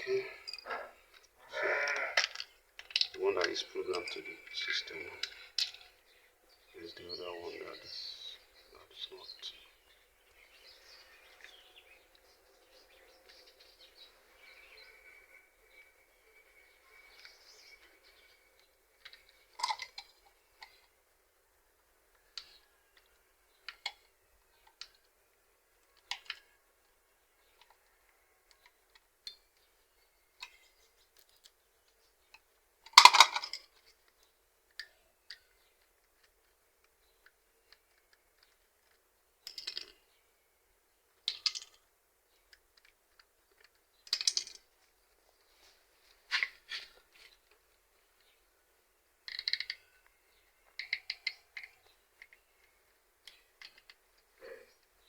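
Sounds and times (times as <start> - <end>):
plastic and metal clicks: 42.5 - 44.6, 49.3 - 49.8.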